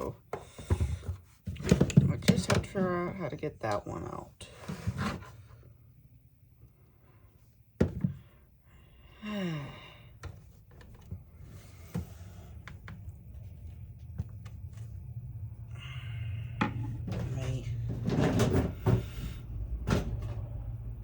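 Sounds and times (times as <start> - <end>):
person sighing: 9.1 - 10.1.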